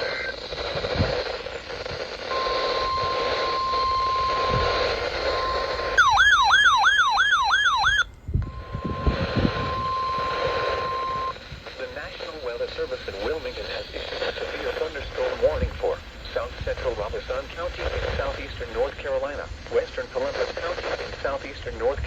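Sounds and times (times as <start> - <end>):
radio hiss: 0.0 - 22.0
steady alarm tone: 2.2 - 11.4
electronic siren sweeping: 2.3 - 11.4.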